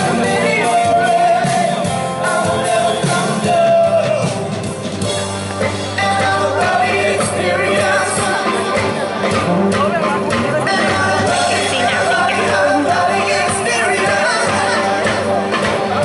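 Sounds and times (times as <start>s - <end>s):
live pop-rock band: 0.0s - 16.0s
singer holding long notes: 6.0s - 15.5s.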